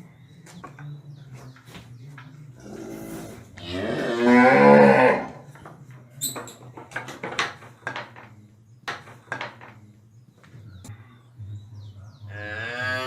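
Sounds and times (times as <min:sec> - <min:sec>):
cow mooing: 0:02.6 - 0:05.4, 0:12.3 - 0:13.0.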